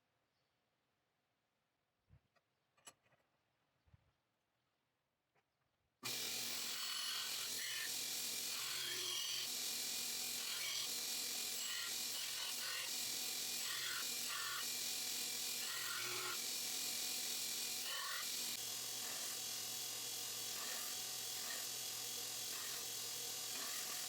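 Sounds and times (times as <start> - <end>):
belt grinder grinding blade: 6.0 - 24.0.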